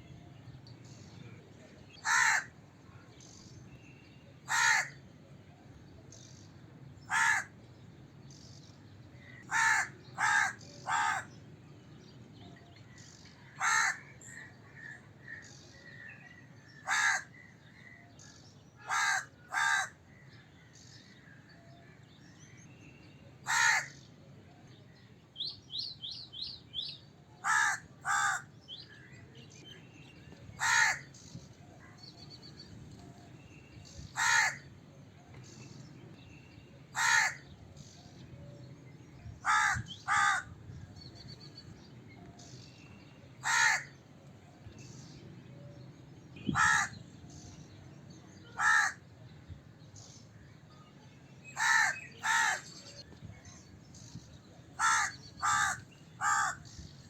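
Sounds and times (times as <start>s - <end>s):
crow cawing: 2.0s - 2.6s, 4.5s - 5.0s, 7.1s - 7.5s, 9.4s - 11.3s, 13.5s - 14.1s, 16.8s - 17.4s, 18.8s - 20.0s, 23.5s - 24.0s, 27.4s - 28.5s, 30.6s - 31.1s, 34.2s - 34.7s, 36.9s - 37.4s, 39.4s - 40.5s, 43.4s - 43.9s, 46.5s - 47.0s, 48.5s - 49.0s, 51.6s - 52.7s, 54.8s - 56.6s.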